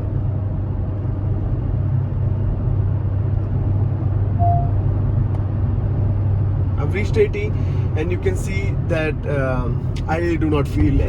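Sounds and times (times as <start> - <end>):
road noise: 0.0 - 11.0
car engine humming: 1.0 - 11.0
faint brief tone: 4.4 - 4.8.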